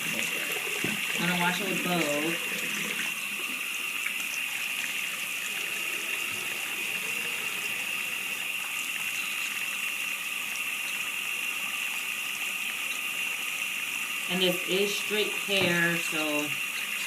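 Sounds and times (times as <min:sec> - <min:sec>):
tap water running into sink: 0:00.0 - 0:17.0.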